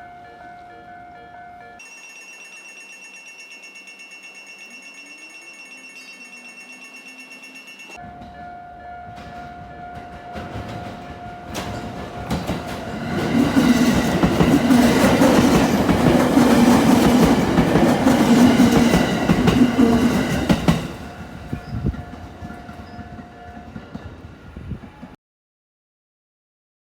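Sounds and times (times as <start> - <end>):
level crossing alarm ringing: 0.0 - 24.0
train wheels clacking: 7.4 - 25.2.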